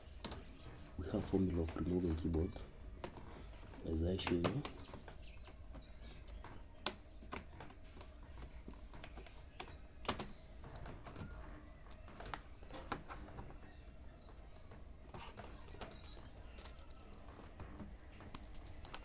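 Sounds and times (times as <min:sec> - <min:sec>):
plastic clicks and taps of keyboard: 0:01.6 - 0:13.5.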